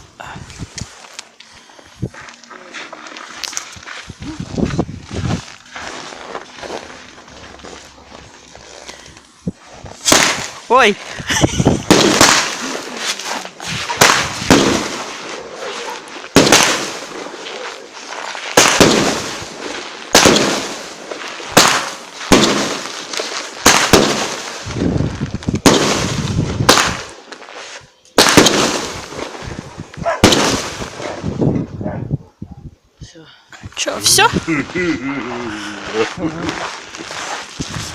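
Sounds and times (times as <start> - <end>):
fireworks bangs with crackling: 9.5 - 31.7, 35.8 - 37.9.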